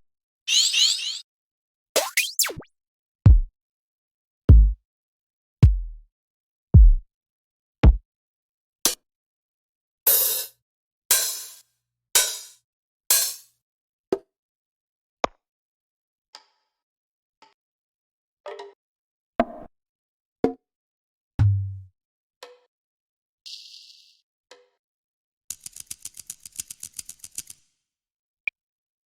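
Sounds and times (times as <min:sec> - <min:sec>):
deep kick drums: 0:03.3 - 0:03.5, 0:04.5 - 0:04.8, 0:05.6 - 0:06.0, 0:06.8 - 0:07.0, 0:07.8 - 0:08.0.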